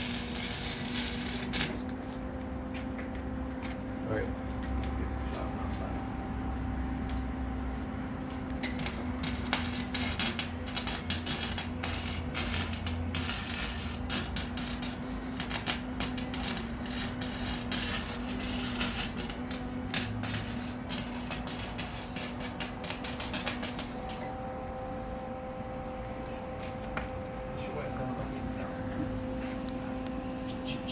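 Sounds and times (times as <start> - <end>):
welding arc crackling: 0.0 - 2.0, 8.5 - 24.4
steady electrical hum: 0.0 - 30.9.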